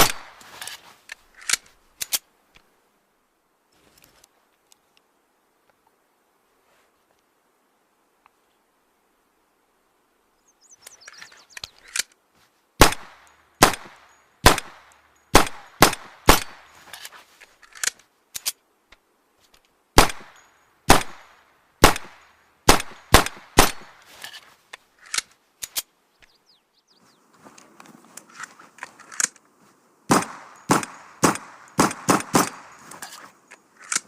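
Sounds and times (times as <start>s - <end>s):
sharp gunshots: 0.0s - 0.4s, 12.8s - 16.7s, 20.0s - 24.0s, 30.1s - 32.8s.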